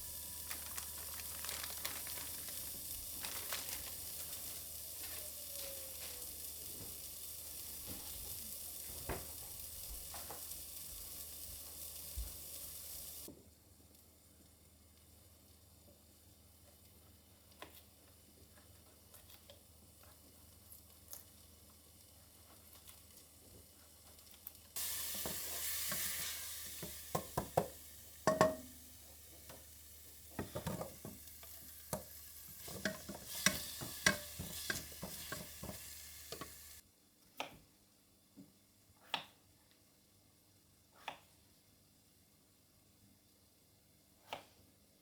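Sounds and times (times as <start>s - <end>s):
food sizzling in a pan: 0.0s - 13.3s, 19.2s - 36.8s
utensil tapping against pan: 26.8s - 28.8s, 31.9s - 36.6s.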